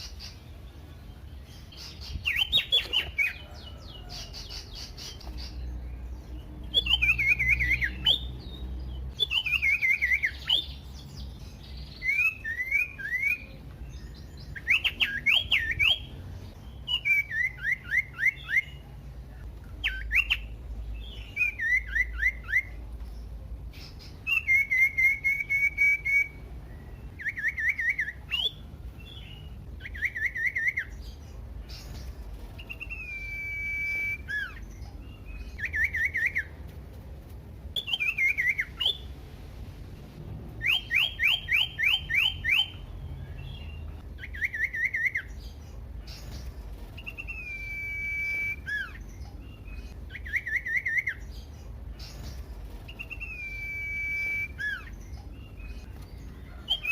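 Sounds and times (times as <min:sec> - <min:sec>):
bird singing whistled phrases: 0:01.7 - 0:05.6, 0:06.7 - 0:08.4, 0:09.1 - 0:10.8, 0:11.9 - 0:16.1, 0:16.8 - 0:18.8, 0:19.8 - 0:22.8, 0:24.2 - 0:31.0, 0:32.6 - 0:36.5, 0:37.8 - 0:39.1, 0:40.6 - 0:45.4, 0:47.0 - 0:51.4, 0:52.9 - 0:55.9, 0:56.6 - 0:56.9.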